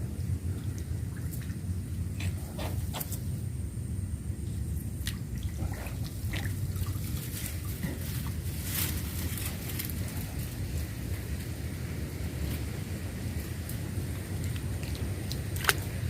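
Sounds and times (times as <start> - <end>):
water drips and splashes: 0.0 - 2.4, 4.5 - 9.8, 13.3 - 16.0.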